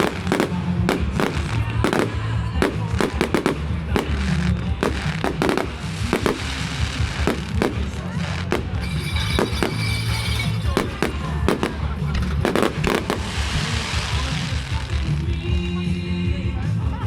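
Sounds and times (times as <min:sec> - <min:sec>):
hissing crackle: 0:00.0 - 0:15.0
aerial firework bangs: 0:04.8 - 0:14.8.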